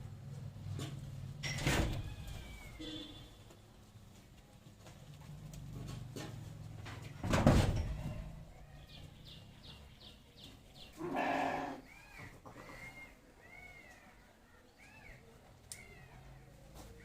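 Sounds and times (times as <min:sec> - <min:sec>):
goat bleating: 0:11.0 - 0:12.0.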